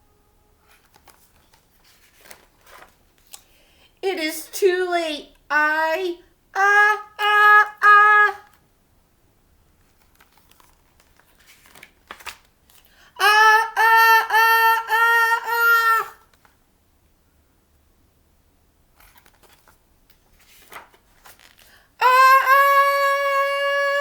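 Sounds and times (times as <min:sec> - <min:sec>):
faint paper rustle: 0:00.6 - 0:03.8, 0:09.8 - 0:13.0, 0:18.9 - 0:21.9.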